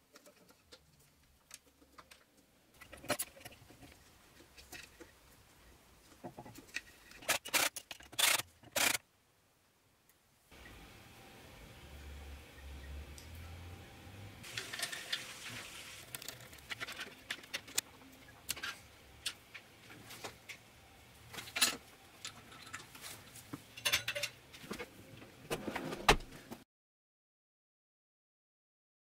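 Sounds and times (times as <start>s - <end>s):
metal parts and tools clinking: 2.8s - 5.1s, 6.4s - 9.0s, 15.9s - 19.6s, 21.3s - 24.8s.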